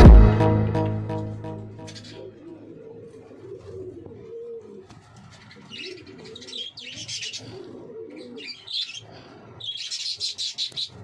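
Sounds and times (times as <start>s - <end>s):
high-pitched bird chirps: 1.8s - 2.3s
pigeons cooing: 1.8s - 11.0s.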